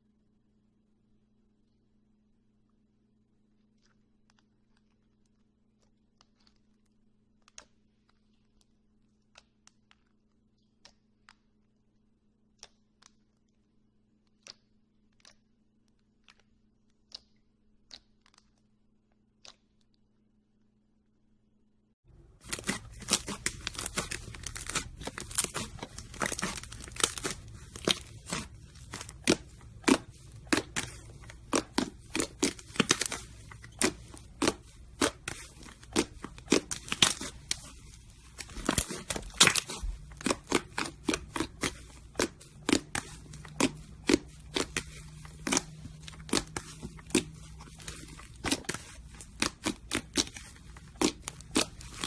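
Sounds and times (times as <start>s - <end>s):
slime crackling and popping: 22.1s - 52.0s.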